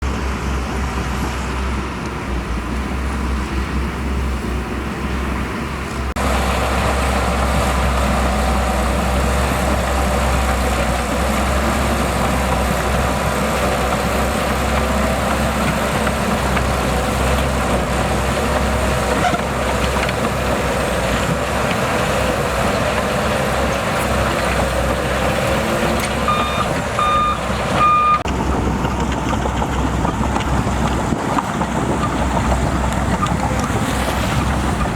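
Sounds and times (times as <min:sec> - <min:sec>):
bulldozer diesel engine rumbling: 0:00.0 - 0:34.9
reversing alarm beeps: 0:26.2 - 0:28.2.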